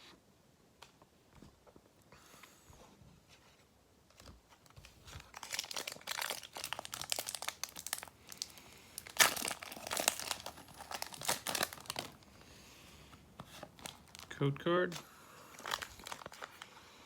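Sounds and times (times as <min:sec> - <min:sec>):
foil wrapper crackling: 0:04.7 - 0:12.2, 0:13.5 - 0:14.4, 0:15.5 - 0:16.8.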